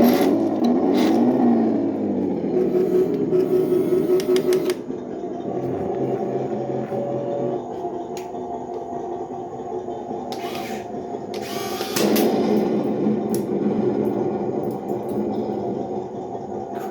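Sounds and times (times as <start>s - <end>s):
small electric motors whining: 0.0s - 7.9s, 10.3s - 12.3s.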